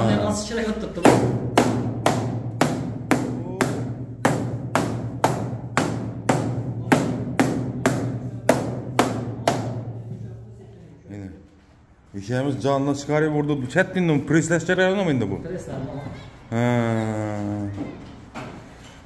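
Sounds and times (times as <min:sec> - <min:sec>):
steady drum beat: 0:00.9 - 0:10.1.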